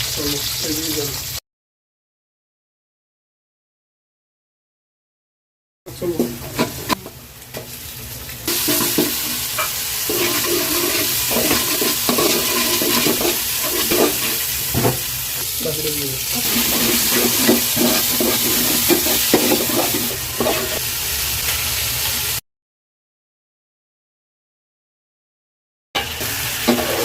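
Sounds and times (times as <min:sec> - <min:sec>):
food sizzling in a pan: 0:00.0 - 0:01.4, 0:05.9 - 0:22.4, 0:26.0 - 0:27.0
spatula scraping a pan: 0:08.5 - 0:15.1, 0:16.3 - 0:20.8, 0:26.6 - 0:27.0.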